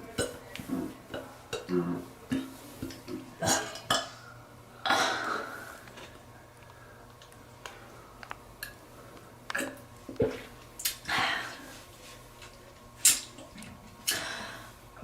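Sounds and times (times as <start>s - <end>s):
wet mouth clicks: 10.8s - 11.0s, 13.0s - 13.4s.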